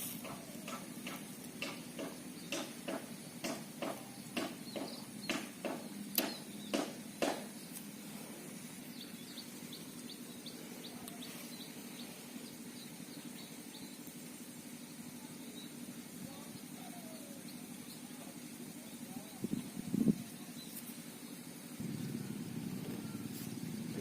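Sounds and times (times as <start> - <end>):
low background hum: 0.0 - 24.0
sharp clicks: 0.2 - 7.4.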